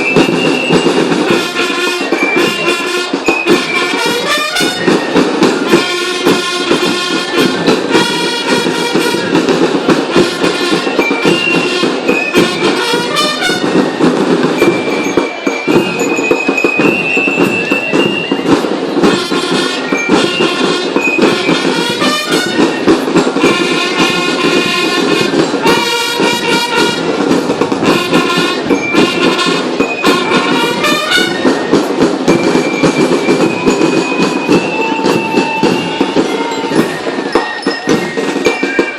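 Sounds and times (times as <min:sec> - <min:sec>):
loud music with percussion beat: 0:00.0 - 0:38.9.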